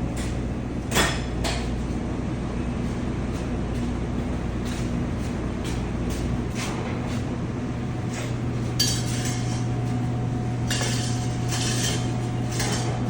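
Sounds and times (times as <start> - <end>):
steady low hum: 0.0 - 13.0
dishes and utensils clinking: 8.8 - 9.6, 10.7 - 13.0.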